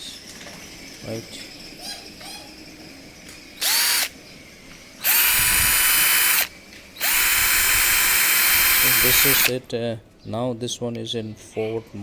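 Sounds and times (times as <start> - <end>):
cordless drill motor whine: 3.1 - 9.5.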